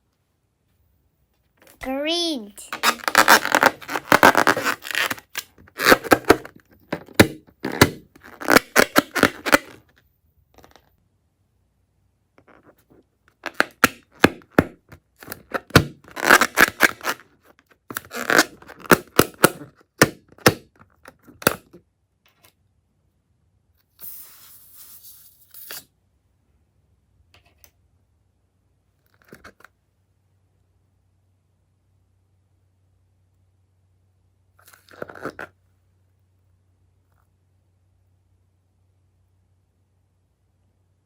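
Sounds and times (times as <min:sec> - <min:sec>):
short hiss: 0:24.0 - 0:25.2.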